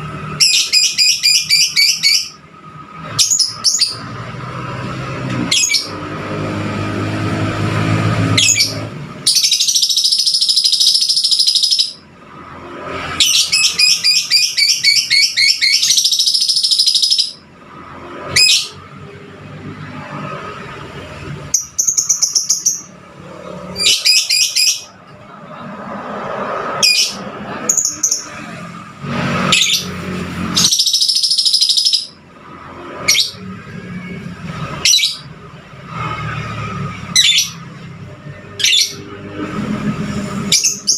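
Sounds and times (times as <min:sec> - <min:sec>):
lovebird chirping: 0:08.4 - 0:12.0, 0:13.2 - 0:17.4, 0:30.6 - 0:32.2.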